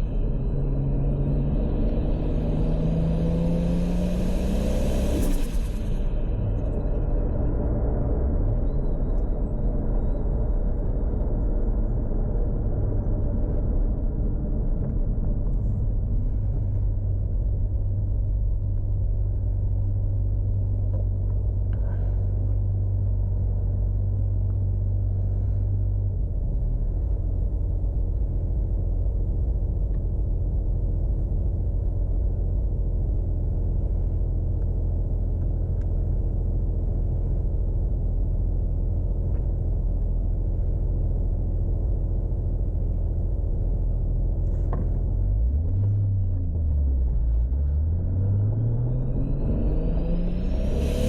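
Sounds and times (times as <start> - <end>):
car engine rumbling: 0.0 - 51.0.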